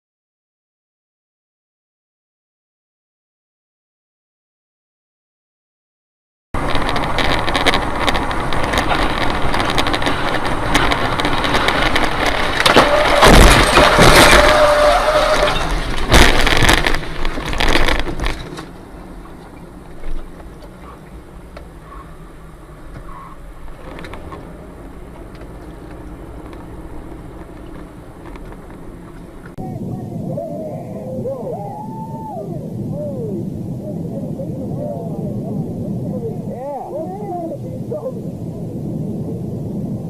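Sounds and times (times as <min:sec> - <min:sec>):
heavy crash impacts: 0:06.6 - 0:18.7.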